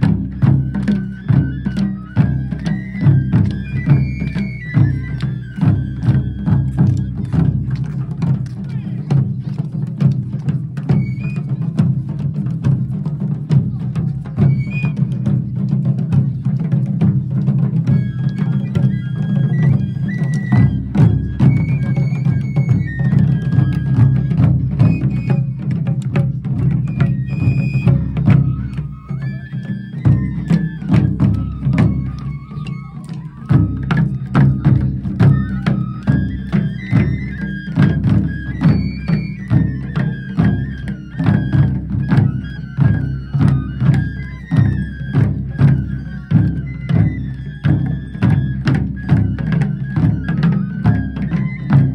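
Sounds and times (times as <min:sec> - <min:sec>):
taiko drums: 0:00.0 - 0:51.9.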